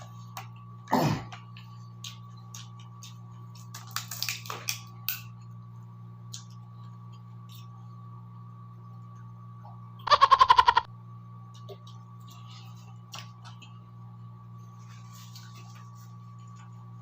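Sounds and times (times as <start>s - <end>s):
steady electrical hum: 0.0s - 17.0s
small clicks and smacks: 1.3s - 5.4s.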